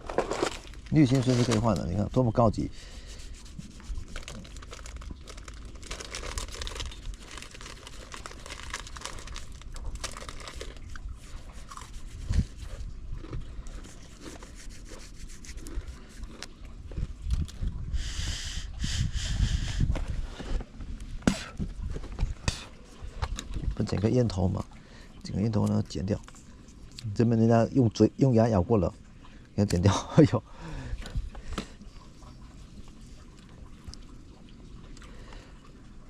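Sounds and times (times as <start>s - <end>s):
small objects crinkling and rustling: 0.0s - 2.7s, 3.3s - 17.5s.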